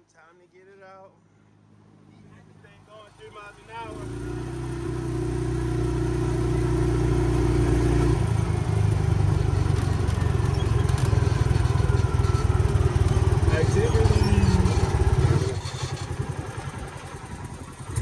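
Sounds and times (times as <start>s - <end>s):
small gasoline engine running: 3.6s - 18.0s.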